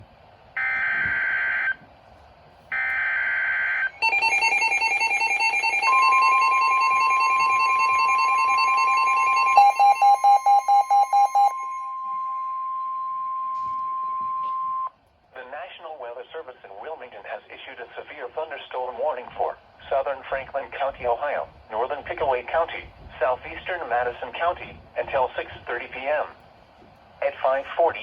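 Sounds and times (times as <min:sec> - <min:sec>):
pulsing receiver alarm: 0:00.6 - 0:01.8, 0:02.7 - 0:14.9
steady warning tone: 0:00.6 - 0:01.8, 0:02.7 - 0:14.9
fast beeps: 0:04.0 - 0:14.9.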